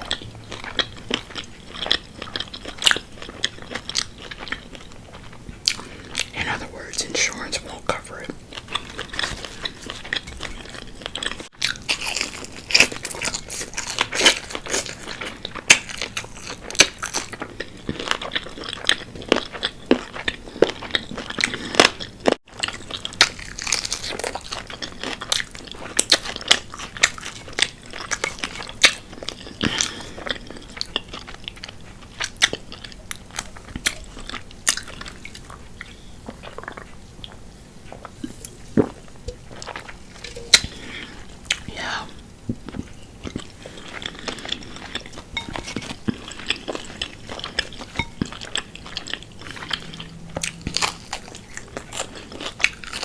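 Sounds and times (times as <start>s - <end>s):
crunchy chewing of fried chicken: 0.0s - 53.0s.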